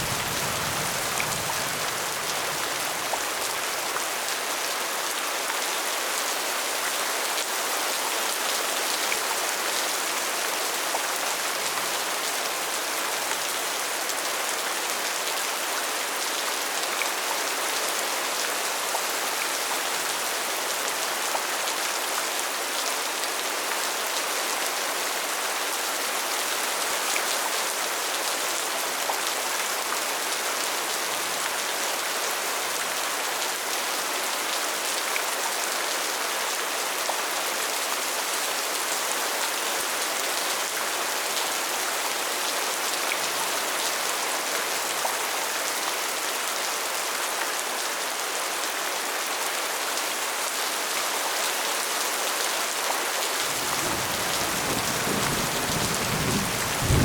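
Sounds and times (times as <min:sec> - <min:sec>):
steady rain hiss: 0:00.0 - 0:04.6, 0:53.2 - 0:57.0.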